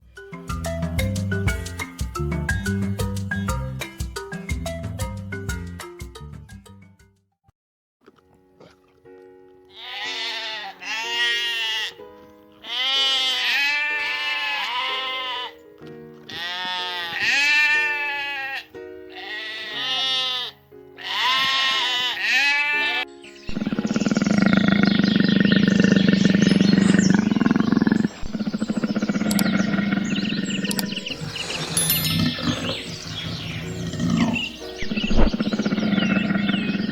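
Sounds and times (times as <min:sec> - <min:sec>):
background music with held notes: 0:00.0 - 0:07.2, 0:08.1 - 0:36.9
sheep bleating: 0:09.7 - 0:12.0, 0:12.6 - 0:15.6, 0:16.3 - 0:23.8.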